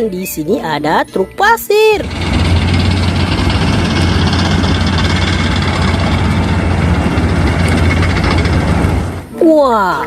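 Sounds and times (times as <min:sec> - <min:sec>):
motor humming and hissing: 0:02.0 - 0:09.2.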